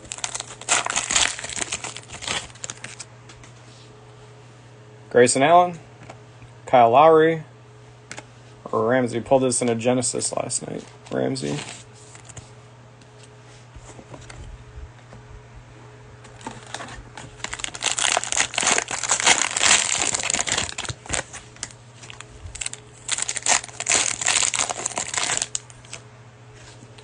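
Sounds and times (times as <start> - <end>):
cellophane wrapper crinkling: 0.0 - 3.1, 16.4 - 26.0.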